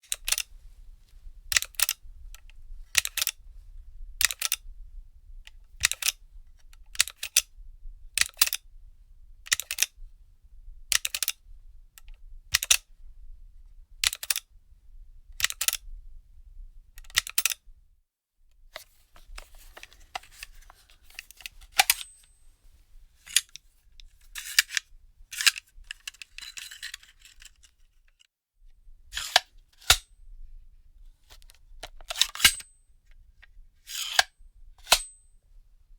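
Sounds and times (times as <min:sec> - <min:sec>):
magazine scraping and rattling: 0:18.8 - 0:22.6, 0:23.2 - 0:28.3, 0:29.2 - 0:30.1, 0:31.2 - 0:32.7, 0:33.9 - 0:35.2
magazine metallic clicks: 0:19.4 - 0:22.4, 0:23.3 - 0:23.6, 0:31.8 - 0:32.8, 0:33.9 - 0:35.2.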